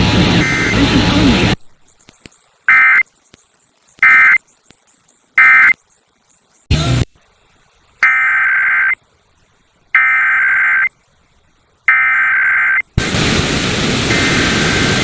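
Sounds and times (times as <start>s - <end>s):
two-tone digital data bursts: 0.0s - 6.7s, 8.0s - 9.0s, 9.9s - 11.0s, 11.9s - 12.9s, 14.1s - 15.0s
brief crackle: 1.6s - 7.3s.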